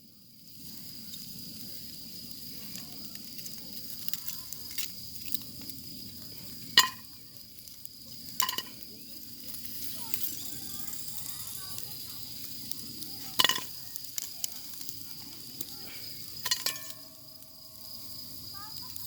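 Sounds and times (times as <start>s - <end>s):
kebabs sizzling on a grill: 0.0s - 19.0s.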